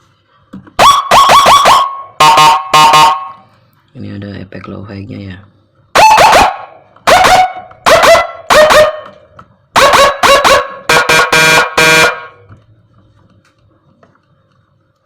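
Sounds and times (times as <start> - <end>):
electronic siren blasts: 0.8 - 3.4, 6.0 - 9.0, 9.8 - 12.4.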